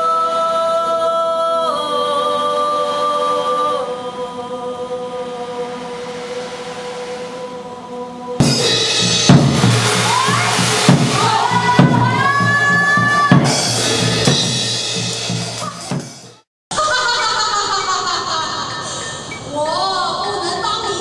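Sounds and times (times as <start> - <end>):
held drone: 1.8 - 15.7
bass drum and snare hits: 8.4 - 16.4.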